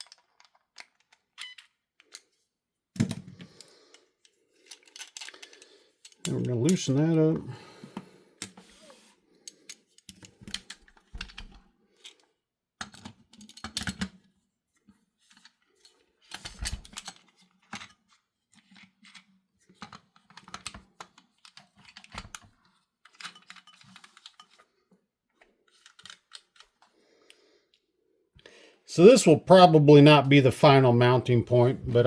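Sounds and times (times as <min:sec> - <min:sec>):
small metal parts clicking: 0:04.6 - 0:06.8.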